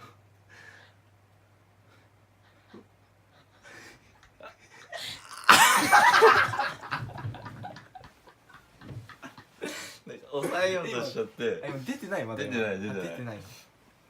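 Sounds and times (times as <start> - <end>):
person breathing: 0.0 - 1.0, 3.5 - 4.2
person laughing: 4.3 - 8.0.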